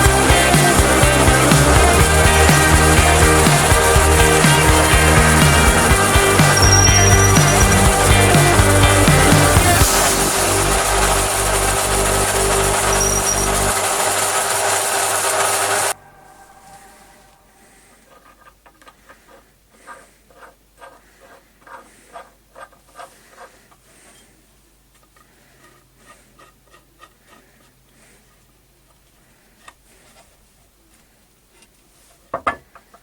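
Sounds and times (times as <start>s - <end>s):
loud steady noise: 0.0s - 17.7s.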